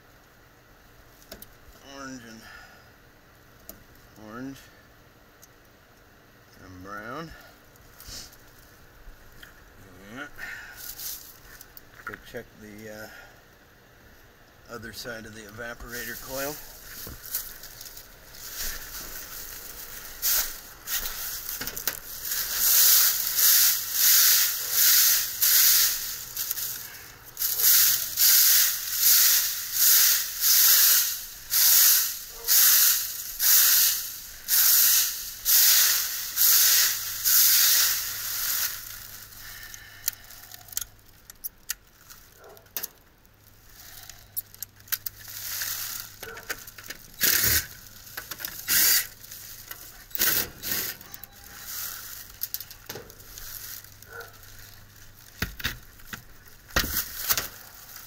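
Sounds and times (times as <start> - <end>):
footsteps crunching dry leaves: 10.8 - 11.7, 15.8 - 40.7, 45.1 - 58.0.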